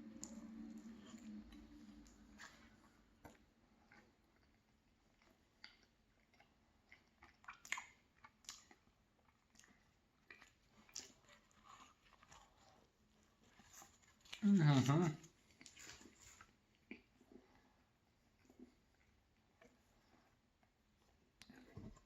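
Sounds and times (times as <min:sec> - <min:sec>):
close-up chewing: 0:00.0 - 0:22.0
wet mouth clicks: 0:07.2 - 0:08.8.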